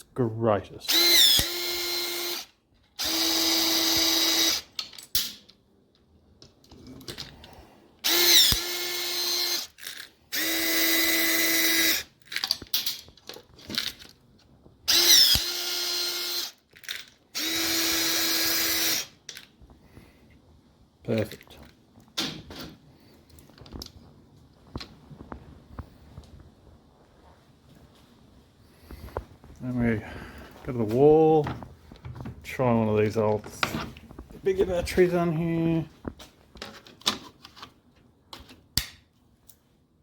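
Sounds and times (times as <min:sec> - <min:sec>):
electric drill whining: 0:00.9 - 0:04.8, 0:08.0 - 0:12.1, 0:14.9 - 0:16.6, 0:17.3 - 0:19.2.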